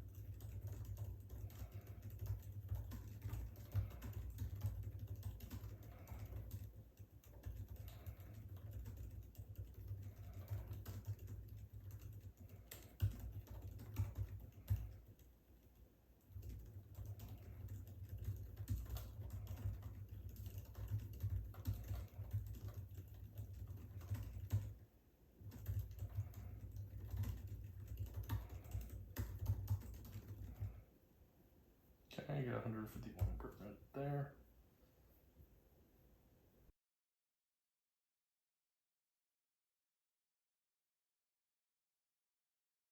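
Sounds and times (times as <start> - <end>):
fast typing on laptop keyboard: 0.0 - 24.8, 25.4 - 30.8, 32.8 - 33.7.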